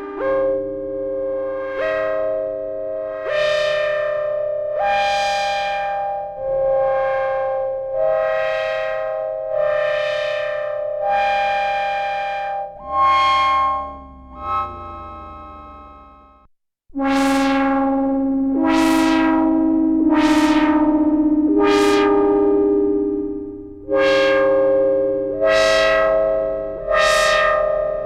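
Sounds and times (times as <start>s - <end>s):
synthesizer held notes over drone: 8.0s - 16.4s, 17.0s - 28.0s.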